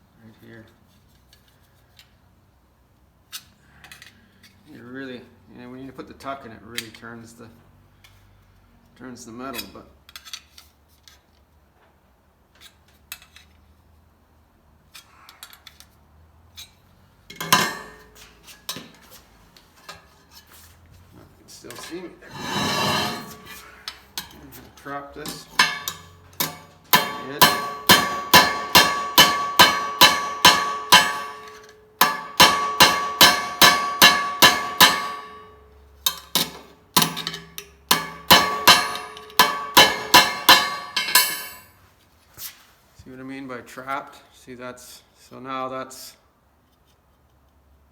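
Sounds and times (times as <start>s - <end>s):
hammer on sheet steel: 17.4s - 18.1s, 21.8s - 23.6s, 25.3s - 41.7s
loud ringing metal clang: 17.4s - 18.1s, 25.3s - 35.6s, 37.0s - 41.7s
light metal clinks and taps: 25.2s - 32.3s, 33.3s - 41.7s.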